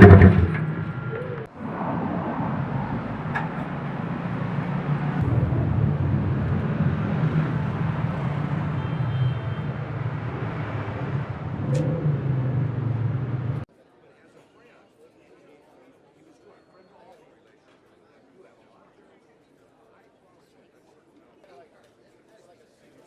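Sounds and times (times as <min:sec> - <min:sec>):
road noise: 0:00.0 - 0:13.6
vehicle engine running: 0:00.0 - 0:13.6.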